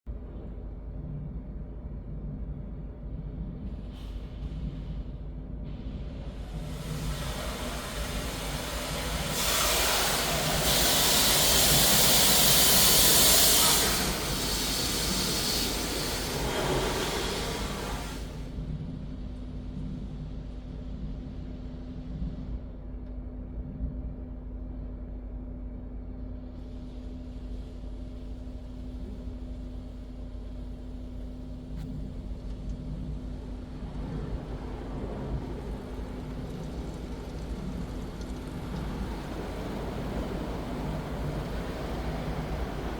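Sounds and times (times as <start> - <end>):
car wash machinery rumble: 0.1 - 24.1, 26.4 - 42.9
loud hissing water spray: 6.0 - 18.5, 33.7 - 42.9
rushing noise: 6.4 - 18.4, 33.1 - 42.9.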